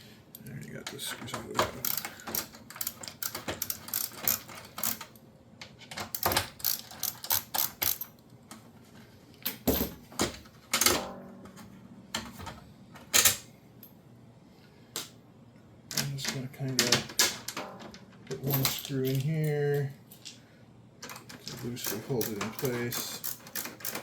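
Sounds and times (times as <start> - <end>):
small clicks and rattles: 0.4 - 8.7, 21.0 - 24.0.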